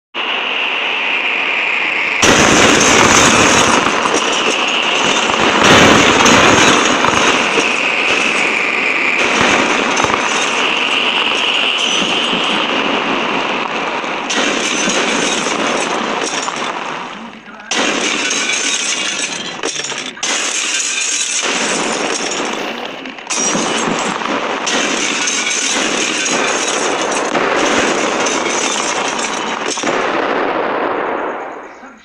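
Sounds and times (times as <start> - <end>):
storm wind rushing: 0.2 - 19.6.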